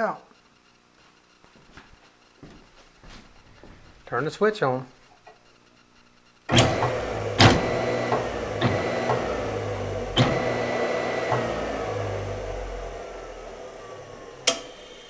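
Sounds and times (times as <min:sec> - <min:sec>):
electric motor humming and whining: 0:06.4 - 0:15.0
sharp knocks: 0:06.5 - 0:09.2.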